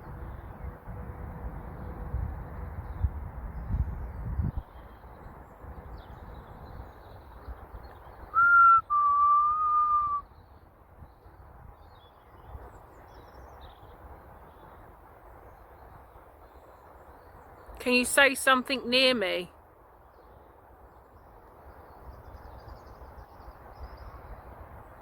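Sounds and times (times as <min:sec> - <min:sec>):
person whistling two notes: 0:08.4 - 0:10.2.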